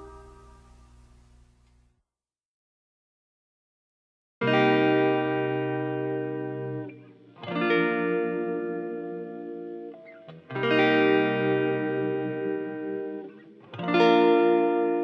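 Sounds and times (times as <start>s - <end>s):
electric guitar chords ringing: 0.0s - 1.1s, 4.4s - 15.0s.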